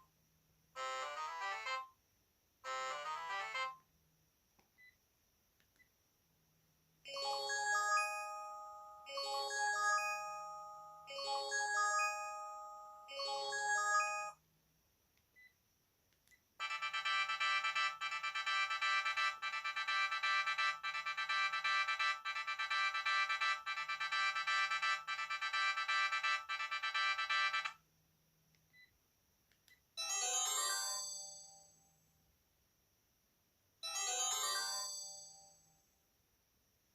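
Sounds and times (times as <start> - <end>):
phone ringtone melodies: 7.1 - 14.4, 16.6 - 27.7
pulsing phone ring: 16.6 - 27.7.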